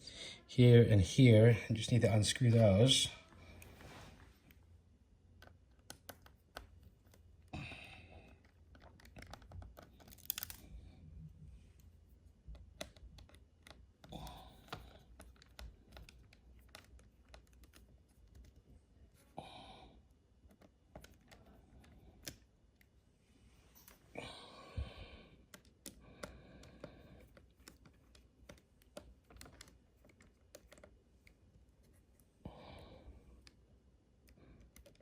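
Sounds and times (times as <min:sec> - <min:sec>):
soft rustles: 0:03.2 - 0:04.7
screwdriver clicks and taps: 0:12.5 - 0:14.1.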